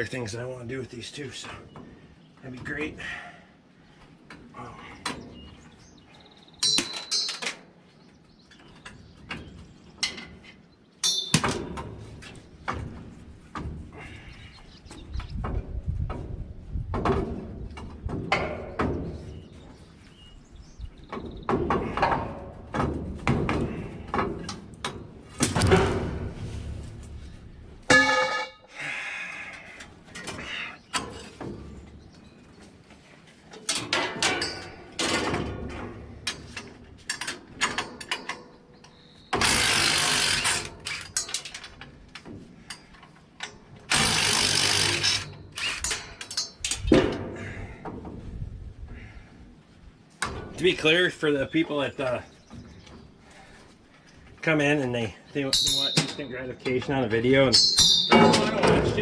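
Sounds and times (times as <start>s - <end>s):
loud ringing metal clang: 11.0s - 11.6s, 27.9s - 28.7s, 55.5s - 56.4s, 57.5s - 59.0s
metal knocking and clanking: 15.3s - 19.4s, 21.0s - 28.6s, 33.6s - 38.6s, 55.5s - 59.0s.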